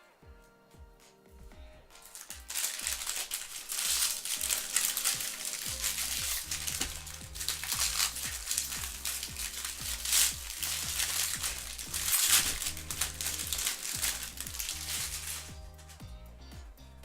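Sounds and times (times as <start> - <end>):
background music with bass beat: 0.0 - 17.0
foil wrapper crinkling: 2.0 - 16.0.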